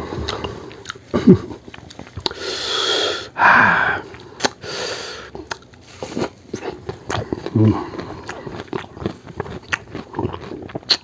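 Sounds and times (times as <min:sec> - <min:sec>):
person breathing hard through mouth: 0:02.3 - 0:05.4
person grunting: 0:03.4 - 0:04.0.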